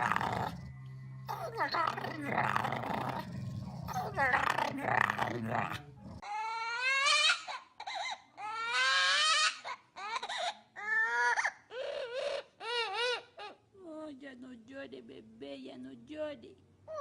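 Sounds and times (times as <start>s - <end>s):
pet crying: 1.3s - 13.6s.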